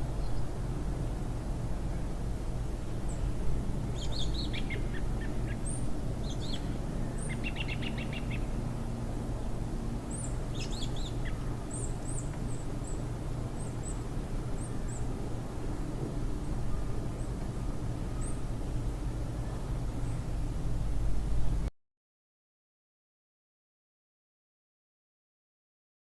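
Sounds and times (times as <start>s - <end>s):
low background rush: 0.0s - 21.7s
small birds chirping: 3.9s - 8.5s, 10.1s - 13.0s.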